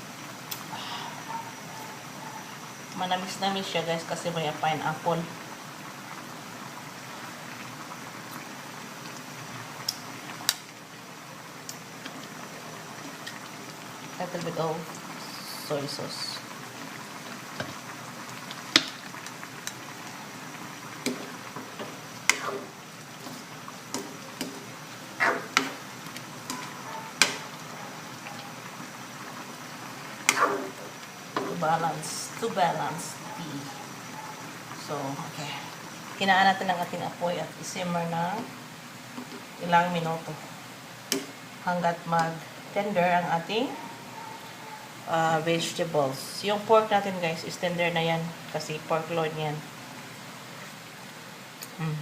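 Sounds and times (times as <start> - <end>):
stew bubbling and hissing: 0.0 - 3.8, 4.5 - 38.3.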